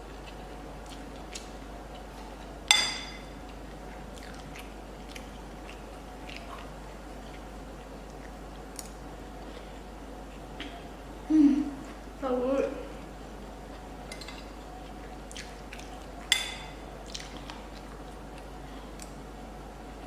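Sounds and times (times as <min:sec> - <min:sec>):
person chewing: 0:00.0 - 0:10.8, 0:13.6 - 0:19.2
utensil clinking on dish: 0:02.7 - 0:03.3.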